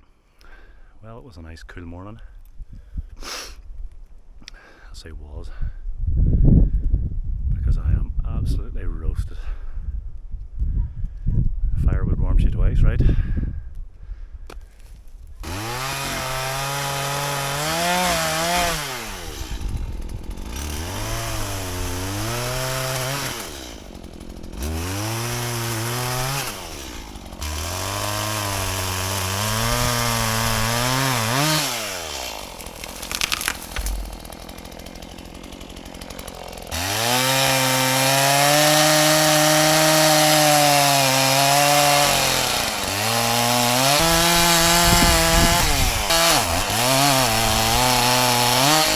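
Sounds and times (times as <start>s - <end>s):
chainsaw revving cutting wood: 15.4s - 48.9s.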